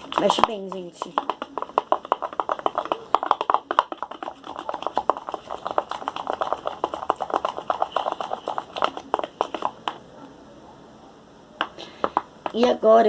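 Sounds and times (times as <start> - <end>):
slime stirred sticky clicking: 0.0 - 10.0.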